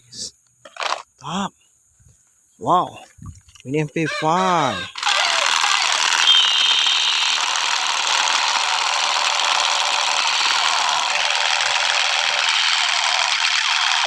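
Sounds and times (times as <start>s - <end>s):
toy gun electronic firing sound: 0.7s - 1.0s, 4.2s - 14.0s.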